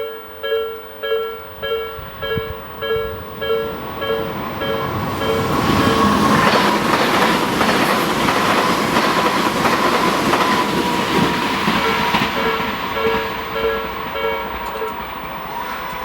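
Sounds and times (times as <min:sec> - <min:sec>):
crossing warning bell ringing: 0:00.0 - 0:16.0
loud rail noise: 0:00.0 - 0:16.0
steady train whine: 0:00.0 - 0:16.0
train wheels clacking over rail joints: 0:04.9 - 0:15.4.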